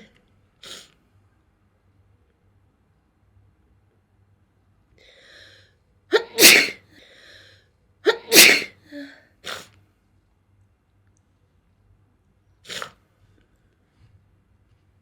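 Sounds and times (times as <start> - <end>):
person sneezing: 6.1 - 6.8, 8.1 - 9.6.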